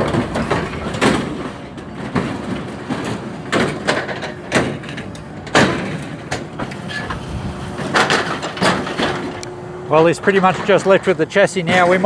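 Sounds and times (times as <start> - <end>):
metal crashes and scrapes: 0.0 - 9.4
excavator engine rumble: 0.0 - 12.0.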